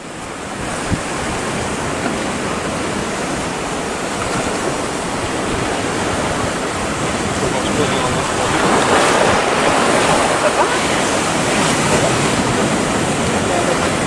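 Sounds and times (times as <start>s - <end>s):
ocean waves breaking: 0.0s - 14.0s.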